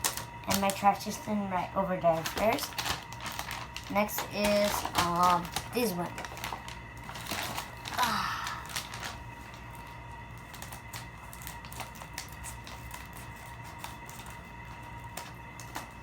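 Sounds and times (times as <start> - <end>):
paper crinkling: 0.0 - 16.0.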